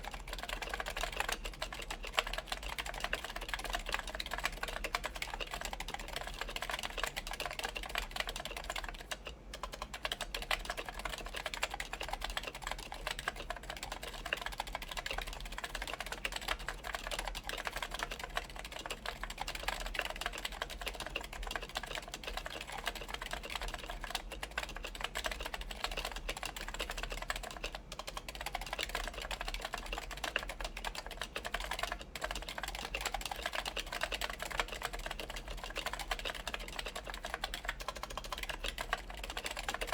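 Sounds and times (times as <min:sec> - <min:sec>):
soft keyboard typing clicks: 0:00.0 - 0:39.9.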